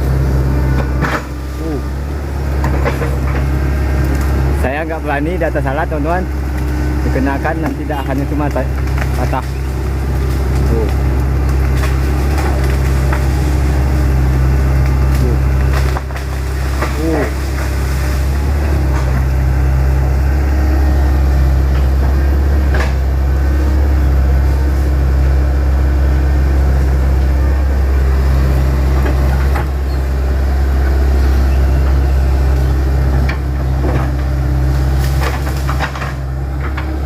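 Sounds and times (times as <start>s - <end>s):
excavator diesel engine running: 0.0s - 37.0s
wood cracking: 6.6s - 19.5s.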